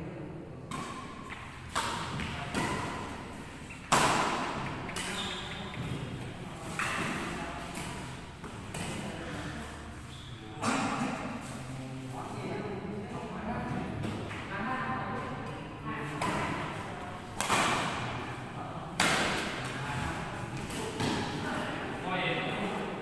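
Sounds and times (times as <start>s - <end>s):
rackets hitting shuttlecock: 0.7s - 9.0s, 16.1s - 18.1s, 19.0s - 19.8s.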